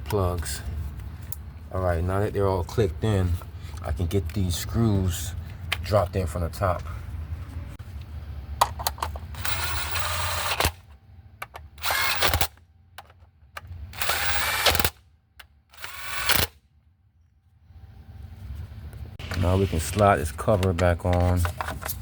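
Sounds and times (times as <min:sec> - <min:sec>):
power driver running bolts: 0:08.7 - 0:16.6.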